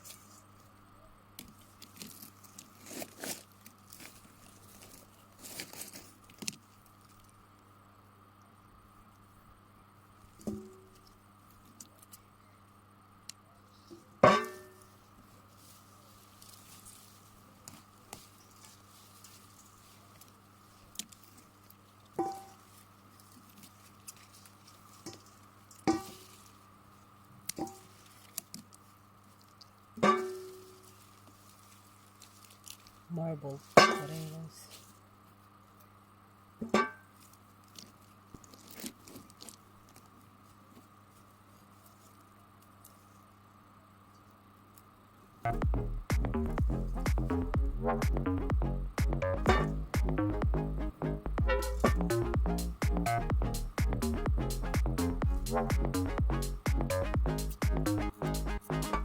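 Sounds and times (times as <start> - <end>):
rustling of plants and soil: 0.0 - 9.4, 13.6 - 45.4.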